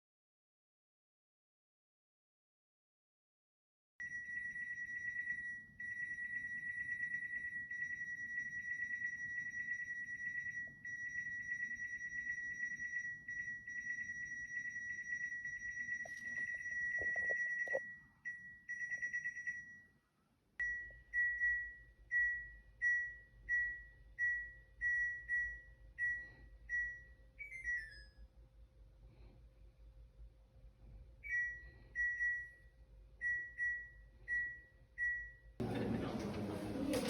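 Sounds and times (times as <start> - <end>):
fluttering electronic alarm tone: 4.0 - 19.9, 20.6 - 28.3
short electronic beeps: 12.2 - 19.7.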